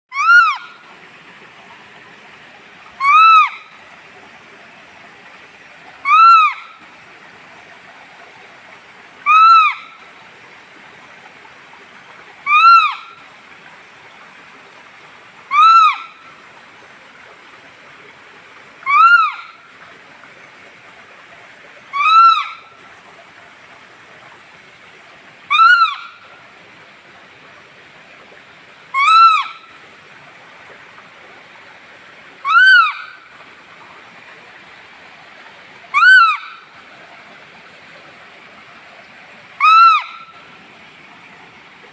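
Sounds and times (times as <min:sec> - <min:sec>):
animal call rising and falling: 0:00.1 - 0:00.8, 0:03.0 - 0:03.6, 0:06.0 - 0:06.7, 0:25.5 - 0:26.2, 0:32.4 - 0:33.2, 0:35.9 - 0:36.6, 0:39.6 - 0:40.3
steady background hiss: 0:00.2 - 0:41.9.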